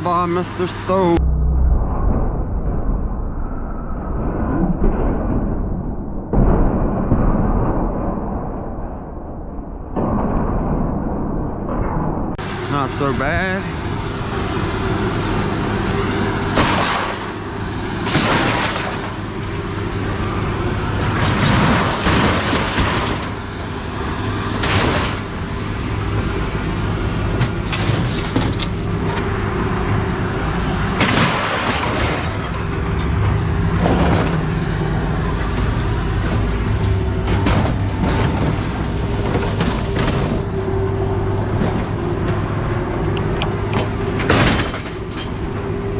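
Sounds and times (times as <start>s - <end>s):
vehicle engine running: 0.0s - 3.3s, 12.4s - 45.9s
clanks bangs and rattles: 15.8s - 17.4s, 18.0s - 30.1s, 30.7s - 45.8s.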